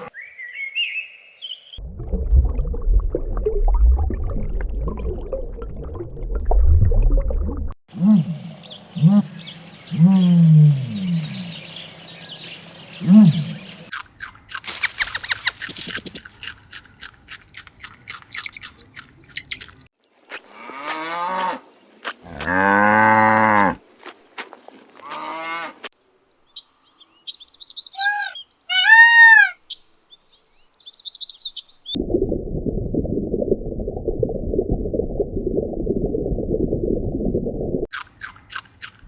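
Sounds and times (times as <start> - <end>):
short high arching calls: 14.6 - 17.0, 18.2 - 19.6, 27.3 - 29.6
cow mooing: 22.3 - 23.8
falling animal call: 28.0 - 29.6.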